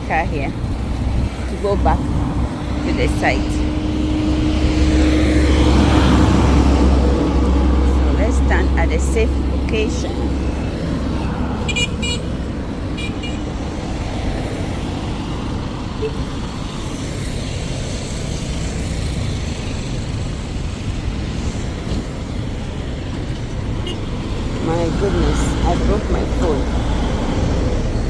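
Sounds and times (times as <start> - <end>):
rumble of passing vehicles: 0.0 - 28.0
car horn toots: 11.7 - 12.3.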